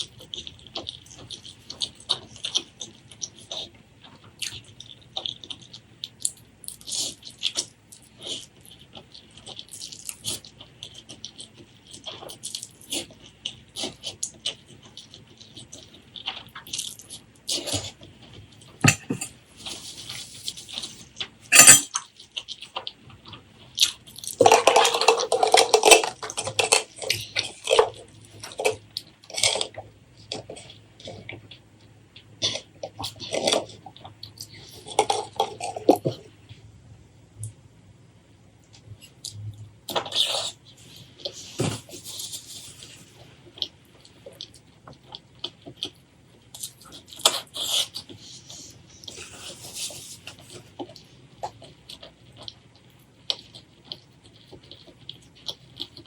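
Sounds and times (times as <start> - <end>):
chewing and mouth sounds: 0.0 - 36.5, 38.6 - 56.0.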